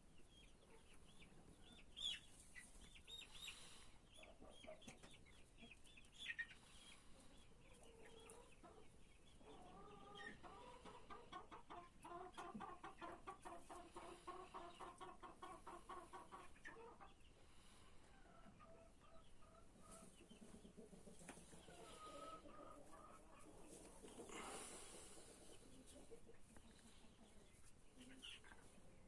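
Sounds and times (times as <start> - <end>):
chickens clucking: 0.0 - 29.0
rapidly pulsing chicken call: 18.2 - 29.0.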